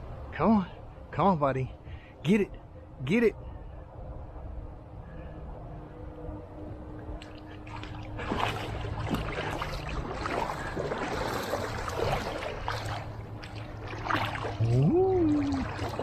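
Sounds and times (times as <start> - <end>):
low steady hum: 0.0 - 16.0
pool water splashing: 7.2 - 16.0.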